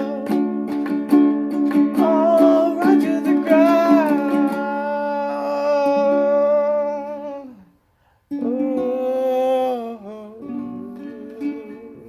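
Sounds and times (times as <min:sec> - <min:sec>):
person humming held notes: 0:00.0 - 0:00.8, 0:01.9 - 0:12.0
plucked string instrument chords: 0:00.0 - 0:07.5.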